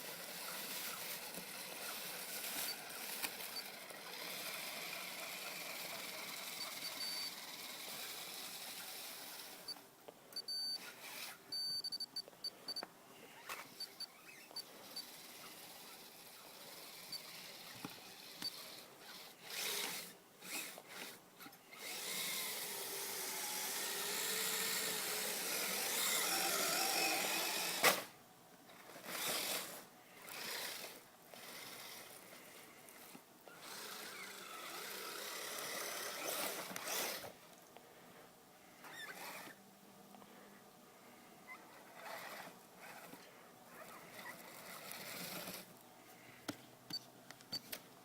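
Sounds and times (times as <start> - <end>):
electric motor whining: 0.0 - 9.8, 21.8 - 28.1, 33.5 - 37.3.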